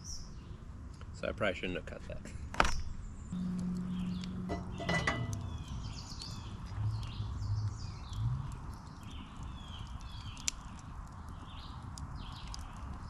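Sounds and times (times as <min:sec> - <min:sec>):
birds chirping: 0:02.7 - 0:13.0
campfire crackling: 0:02.8 - 0:13.0
low croaking calls: 0:03.3 - 0:13.0.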